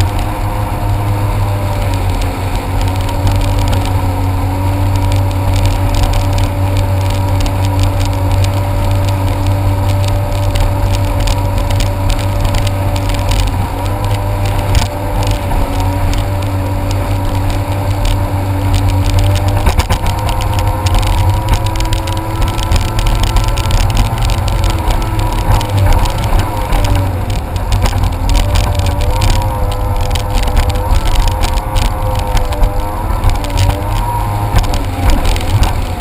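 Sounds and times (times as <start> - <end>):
heavy low rumble: 0.0 - 36.0
jet ski engine running: 0.0 - 36.0.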